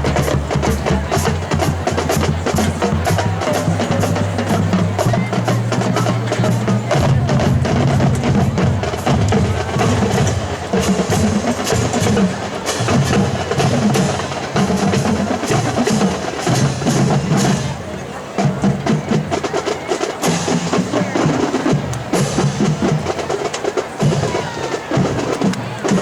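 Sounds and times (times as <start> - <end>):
bass drum strikes: 0.0 - 10.3
marching drum cadence: 0.0 - 26.0.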